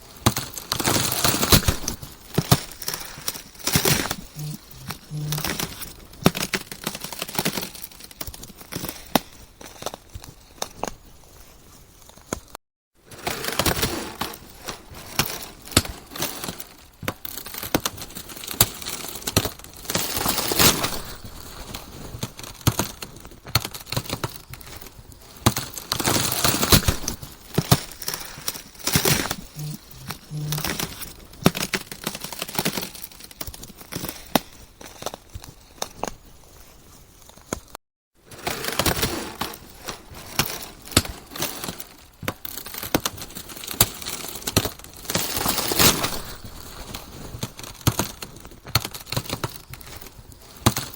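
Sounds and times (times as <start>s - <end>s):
ice cracking and snapping: 0.2s - 10.1s, 38.4s - 50.9s.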